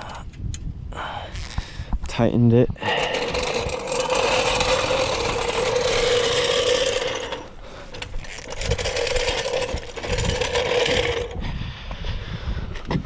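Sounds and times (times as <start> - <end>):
impact wrench buzzing: 2.8 - 11.4.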